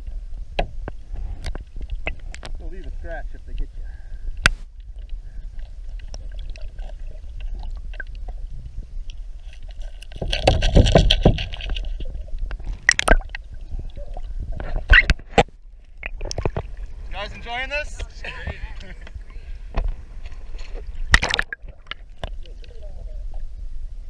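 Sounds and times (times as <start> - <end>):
water splashing against boat: 4.9 - 23.4.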